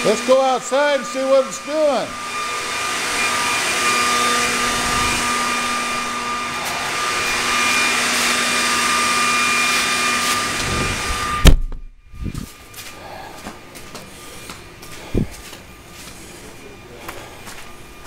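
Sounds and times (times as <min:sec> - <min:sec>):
blower whining: 0:00.0 - 0:18.0
loud thump: 0:11.4 - 0:11.9.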